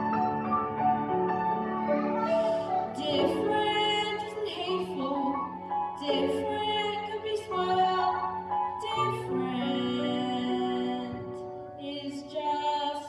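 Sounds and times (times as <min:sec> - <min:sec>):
steady musical accompaniment: 0:00.0 - 0:12.1
person singing slow song: 0:02.1 - 0:05.4.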